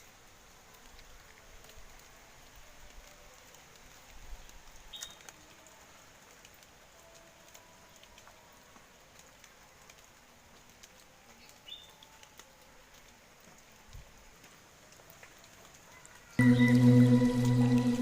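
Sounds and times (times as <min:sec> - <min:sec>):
faint rain with drips: 0:00.0 - 0:18.0.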